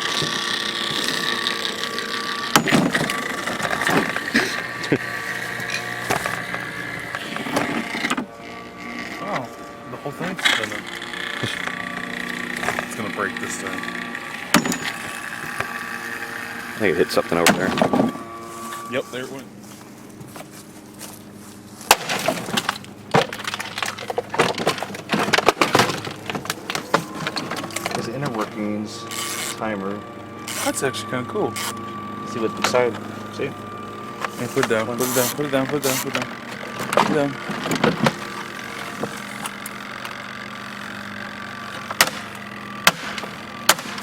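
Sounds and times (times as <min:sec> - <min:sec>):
faint motor hum: 0:00.0 - 0:44.0
sharp cracks: 0:21.8 - 0:26.9, 0:41.8 - 0:44.0
plastic parts cracking and rattling: 0:21.9 - 0:28.5, 0:34.3 - 0:41.1.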